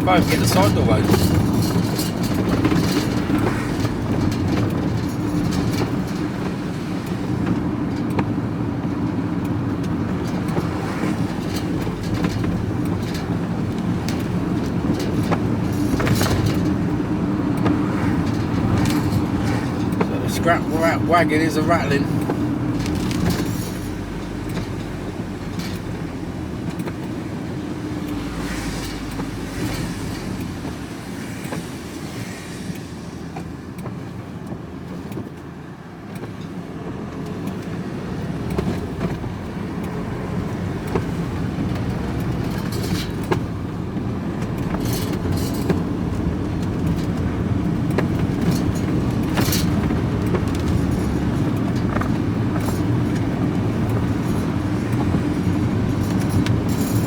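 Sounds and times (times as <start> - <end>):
van engine and road drone: 0.0 - 57.0
scrap metal clattering: 10.8 - 25.9.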